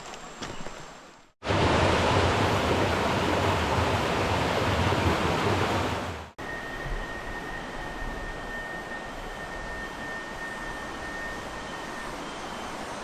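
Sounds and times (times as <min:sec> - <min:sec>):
rushing water: 0:01.4 - 0:06.4
faint high-pitched tone: 0:06.4 - 0:13.0.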